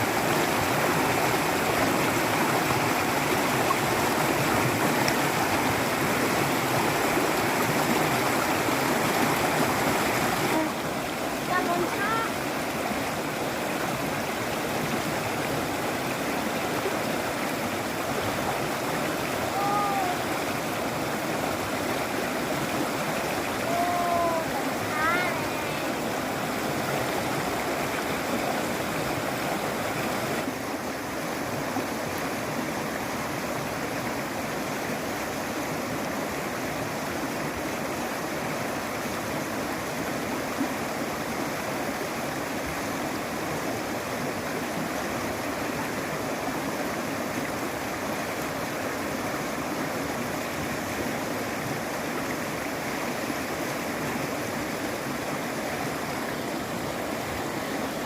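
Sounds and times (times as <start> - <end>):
steady rushing water-like noise: 0.0 - 58.0.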